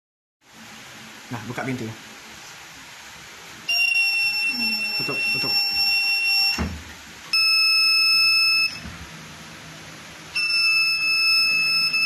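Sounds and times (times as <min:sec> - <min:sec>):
door alarm shrill tone: 0:03.7 - 0:06.7, 0:07.3 - 0:08.9, 0:10.3 - 0:12.0.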